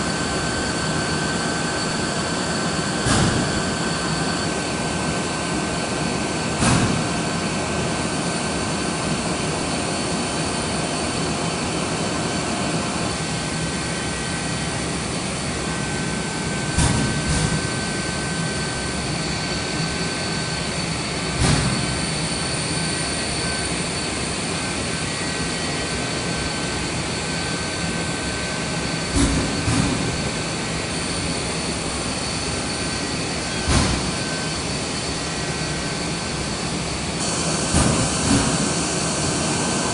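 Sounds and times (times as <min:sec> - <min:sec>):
drilling machine whirring hum: 0:00.0 - 0:39.9
machine clunk: 0:29.1 - 0:30.2, 0:33.6 - 0:34.2.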